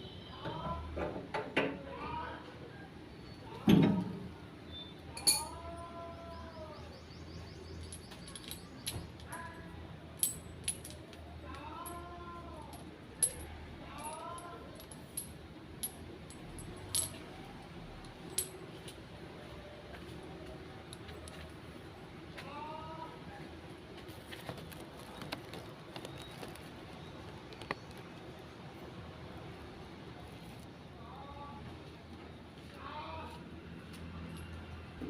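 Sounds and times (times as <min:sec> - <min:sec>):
metal parts clinking: 0:05.2 - 0:05.7, 0:07.8 - 0:09.6, 0:10.2 - 0:12.1, 0:12.7 - 0:17.3, 0:18.0 - 0:19.0.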